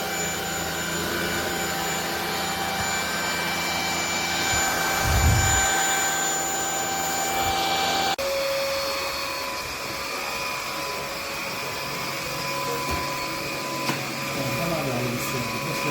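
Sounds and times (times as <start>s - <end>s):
vacuum motor whining: 0.0s - 15.9s.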